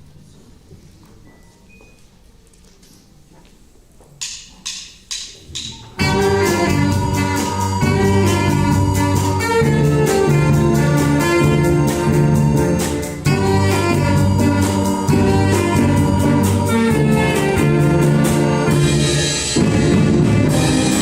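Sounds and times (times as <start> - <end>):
orchestra playing chords: 6.0 - 21.0
steady bass line: 6.0 - 21.0.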